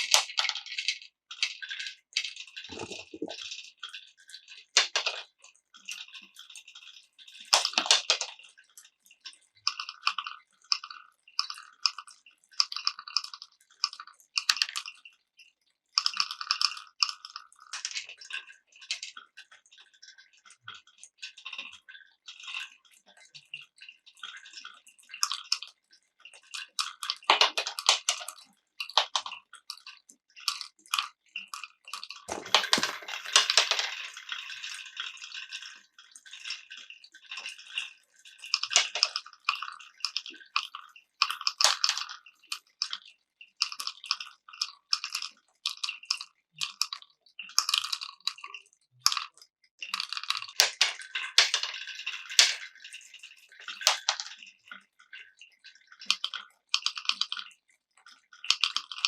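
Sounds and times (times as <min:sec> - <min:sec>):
glass marbles rolling and clacking: 0:04.8 - 0:05.4, 0:27.2 - 0:29.3, 0:32.2 - 0:35.1, 0:38.5 - 0:39.2, 0:49.9 - 0:52.8, 0:53.6 - 0:54.4.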